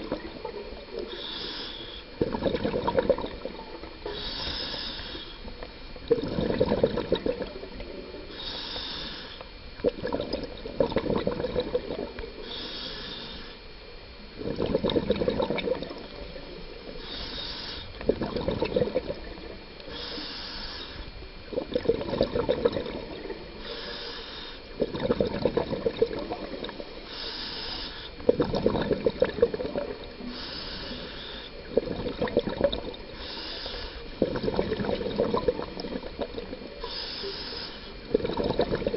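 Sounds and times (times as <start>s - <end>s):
exhaled bubbles gushing: 0.0s - 1.1s, 2.2s - 4.0s, 6.0s - 8.3s, 9.8s - 12.4s, 14.3s - 16.9s, 17.9s - 19.8s, 21.4s - 23.6s, 24.7s - 27.1s, 28.2s - 30.4s, 31.6s - 33.2s, 34.1s - 36.9s, 38.0s - 38.9s
regulator inhale hiss: 0.0s - 2.2s, 4.0s - 5.6s, 8.2s - 9.6s, 12.4s - 13.8s, 16.1s - 18.2s, 19.5s - 21.5s, 23.6s - 24.9s, 26.3s - 28.3s, 30.0s - 31.7s, 32.9s - 34.3s, 36.6s - 38.1s.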